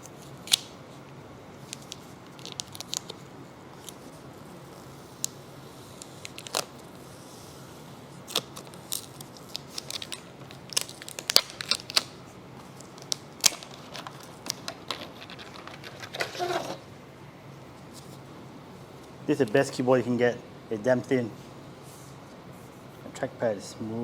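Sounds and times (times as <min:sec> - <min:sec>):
packaging crinkling and tearing: 0:01.6 - 0:03.2, 0:06.0 - 0:06.8, 0:08.2 - 0:16.8.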